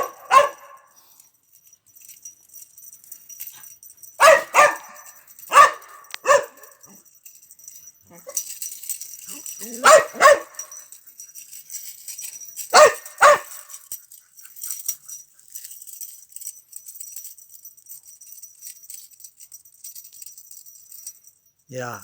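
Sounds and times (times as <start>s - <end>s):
dog barking: 0.0s - 1.0s, 4.2s - 7.0s, 8.1s - 8.4s, 9.3s - 10.8s, 12.7s - 13.8s.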